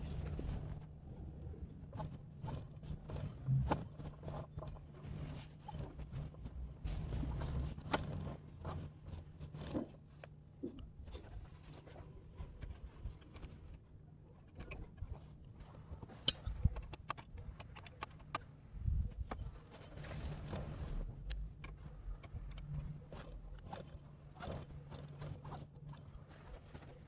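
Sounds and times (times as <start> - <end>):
low steady hum: 0.0 - 27.0
clicks and knocks of hand work: 7.4 - 18.5.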